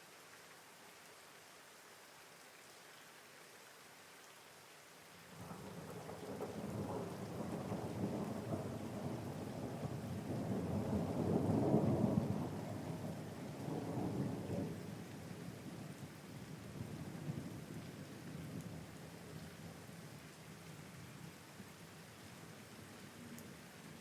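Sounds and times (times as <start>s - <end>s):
steady rain: 0.0s - 24.0s
thunder rumbling: 5.3s - 15.8s.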